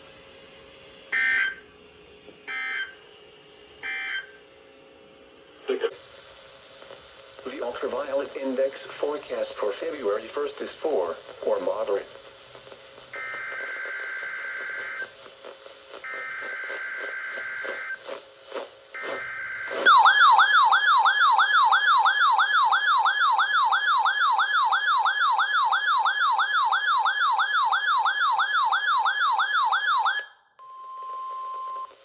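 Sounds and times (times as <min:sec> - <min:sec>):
warbling alarm siren: 0:01.1 - 0:01.7, 0:02.4 - 0:03.0, 0:03.8 - 0:04.4, 0:19.2 - 0:30.5
two-tone data squeals: 0:03.8 - 0:04.4.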